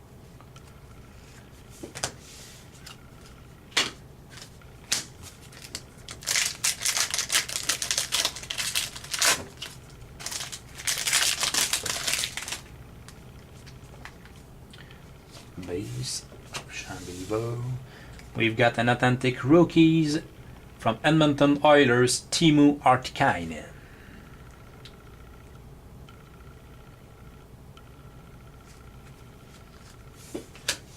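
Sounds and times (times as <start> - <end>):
wrapper and cards crinkling: 4.3 - 12.7.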